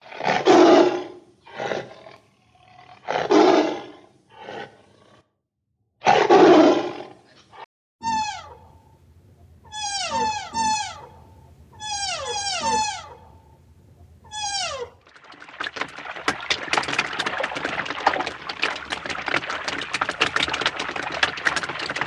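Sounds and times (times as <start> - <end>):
falling whining cries: 8.0 - 8.9, 9.6 - 13.6, 14.2 - 15.0.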